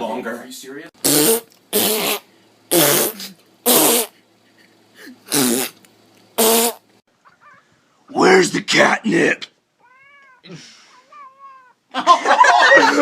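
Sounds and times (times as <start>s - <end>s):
buzzy farting noises: 1.0s - 4.2s, 5.2s - 5.8s, 6.4s - 6.9s.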